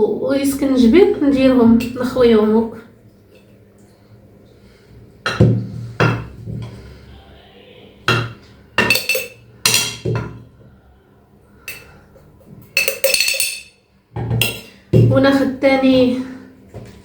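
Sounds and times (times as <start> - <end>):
kitchenware clinking on glass jar: 8.1 - 10.4, 12.7 - 13.8.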